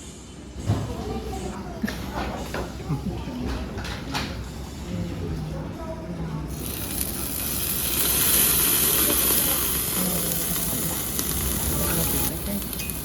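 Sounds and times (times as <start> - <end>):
meat sizzling on a grill: 6.5 - 13.0.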